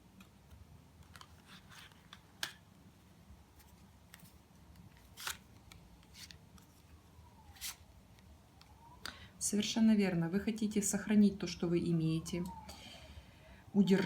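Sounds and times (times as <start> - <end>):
cards clicking and snapping: 0.2 - 2.6, 4.1 - 6.7.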